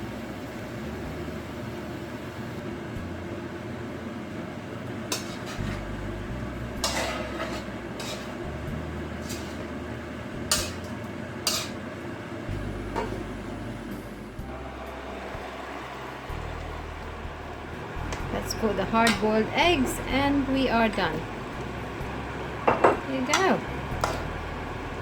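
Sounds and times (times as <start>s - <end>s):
steady low hum: 0.0s - 25.0s
utensil clinking against pan: 6.8s - 8.4s, 9.2s - 9.7s, 10.5s - 10.9s, 11.5s - 11.8s, 22.6s - 24.4s.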